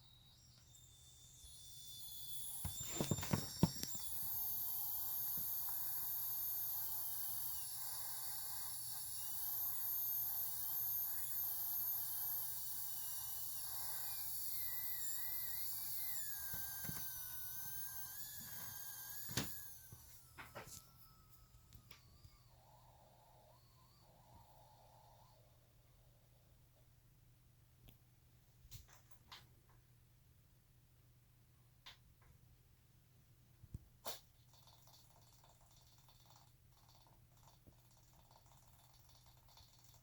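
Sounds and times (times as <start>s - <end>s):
monitor high-pitched hiss: 0.0s - 25.7s.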